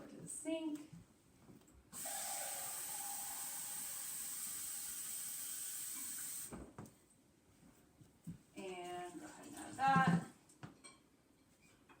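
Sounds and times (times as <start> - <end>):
tap running water into a can: 2.0 - 6.6.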